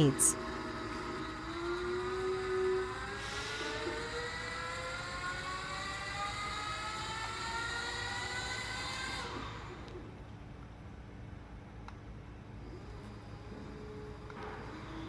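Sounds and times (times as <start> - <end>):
electric motor whining: 0.4 - 10.0.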